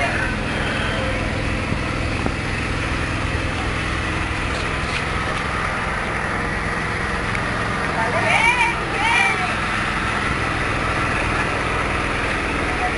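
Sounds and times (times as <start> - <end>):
small petrol engine running: 0.0 - 12.9.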